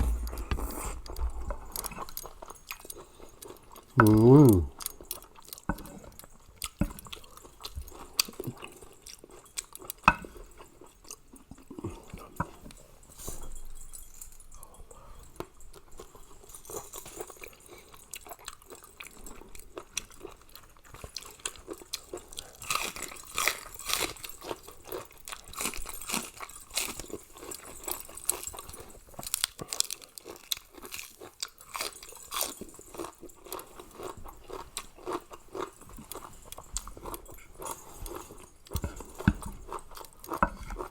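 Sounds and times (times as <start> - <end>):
person chewing and crunching: 0.0 - 40.9.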